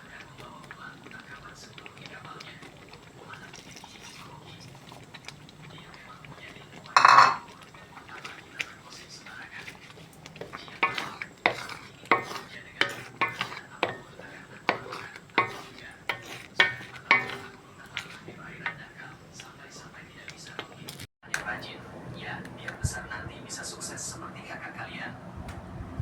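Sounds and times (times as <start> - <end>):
metal utensils clinking on dishes: 6.3 - 19.0.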